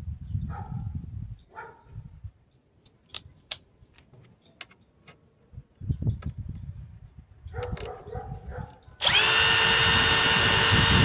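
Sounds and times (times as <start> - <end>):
impact driver rumbling: 9.0 - 11.0.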